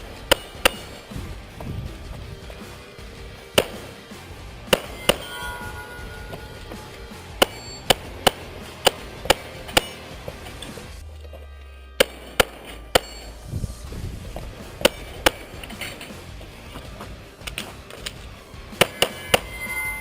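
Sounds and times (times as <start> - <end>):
steel targets clanging: 0.0 - 1.4, 4.7 - 11.4, 12.0 - 13.5, 14.4 - 20.0
pistol shots: 3.5 - 4.0, 4.7 - 5.3, 12.0 - 13.4.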